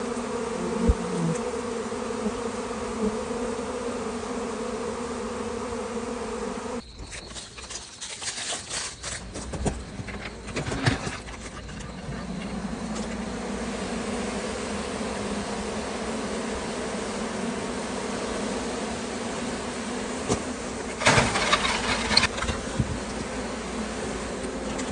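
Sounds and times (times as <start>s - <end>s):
bees buzzing: 0.0s - 8.0s, 8.8s - 24.9s
knocks and rustling: 7.0s - 13.3s, 20.3s - 23.3s.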